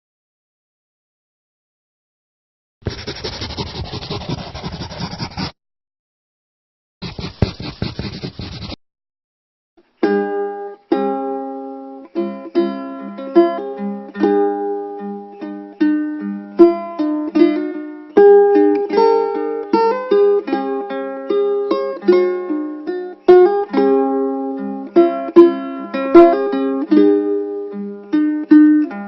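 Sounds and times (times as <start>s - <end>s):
scratchy rubbing noise: 2.8s - 5.6s, 7.0s - 8.8s
ukulele plucked melody: 9.8s - 29.0s.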